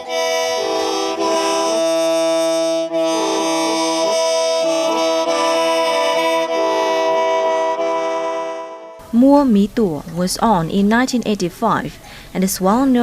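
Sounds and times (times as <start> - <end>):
free-reed mouth organ chords: 0.0 - 9.1.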